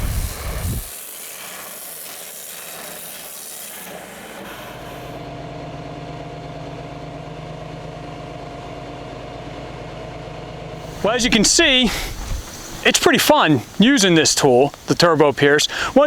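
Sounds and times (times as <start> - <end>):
water jet hissing: 0.0 - 5.2, 10.8 - 16.0
engine and pump hum: 0.0 - 16.0.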